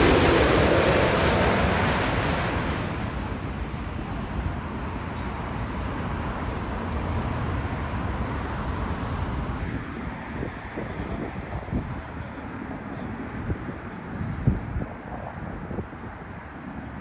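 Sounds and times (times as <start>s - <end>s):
jet airliner passing: 0.0s - 17.0s.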